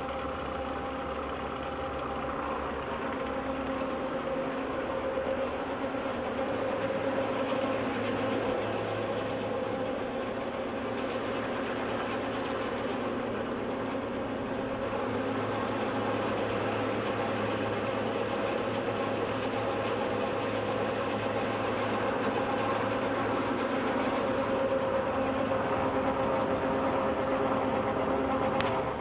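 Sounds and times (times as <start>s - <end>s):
lathe running with mechanical hum: 0.0s - 29.0s.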